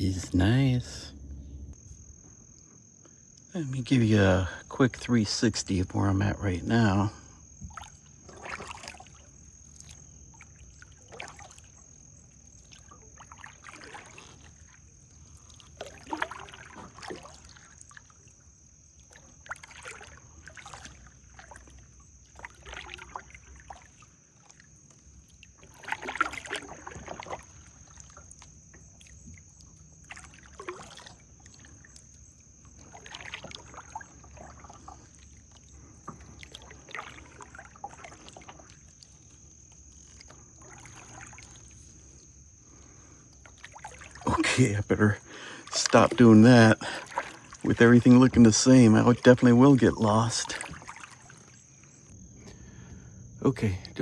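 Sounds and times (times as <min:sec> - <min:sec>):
paddle splashing in water: 0:06.1 - 0:54.0
water dripping off paddle: 0:07.0 - 0:52.8.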